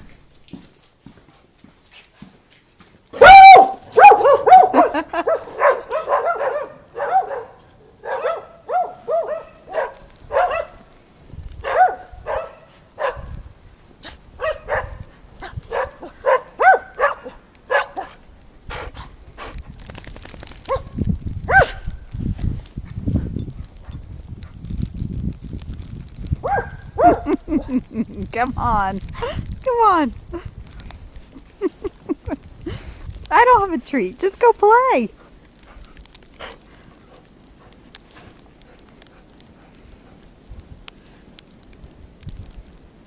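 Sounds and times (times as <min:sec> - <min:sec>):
dog barking: 0:03.2 - 0:10.9, 0:11.6 - 0:13.3, 0:14.4 - 0:15.0, 0:15.7 - 0:18.2, 0:20.7 - 0:21.9, 0:26.4 - 0:27.4.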